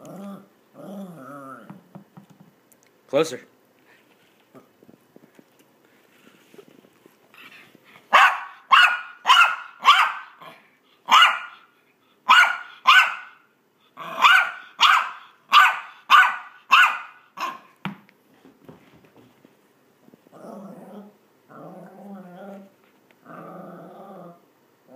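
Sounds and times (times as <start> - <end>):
dog barking sharply: 8.1 - 10.4, 11.1 - 11.6, 12.3 - 13.4, 14.2 - 17.7.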